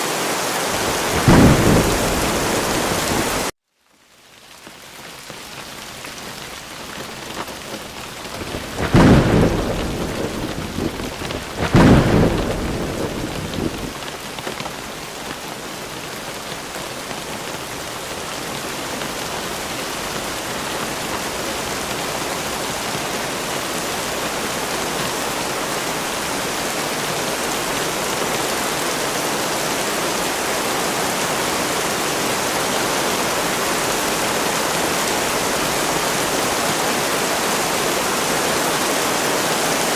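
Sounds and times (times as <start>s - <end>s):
steady rain: 0.0s - 39.9s
thunder rumbling: 0.7s - 3.5s, 7.2s - 14.3s.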